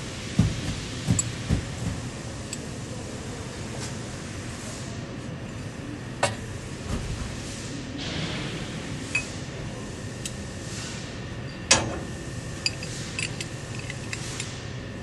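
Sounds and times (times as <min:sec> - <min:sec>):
allen key metal clicks: 0:12.6 - 0:14.6.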